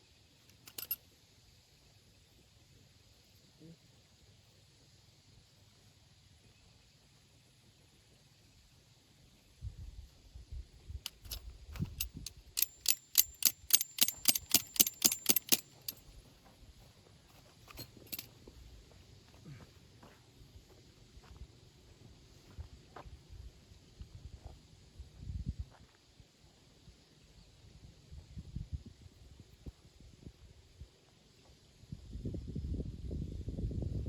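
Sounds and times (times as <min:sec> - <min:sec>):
light metallic clinks: 0:00.5 - 0:01.0, 0:11.1 - 0:16.0, 0:17.3 - 0:18.3.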